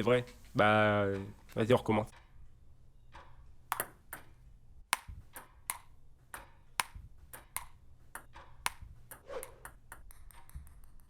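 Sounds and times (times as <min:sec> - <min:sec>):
ping-pong ball clicks: 0:03.1 - 0:11.0.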